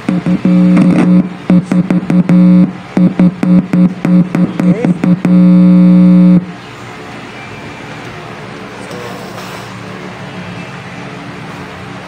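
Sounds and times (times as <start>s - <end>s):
keyboard chord through speaker: 0.0s - 6.5s
low background hiss and hum: 0.0s - 6.8s.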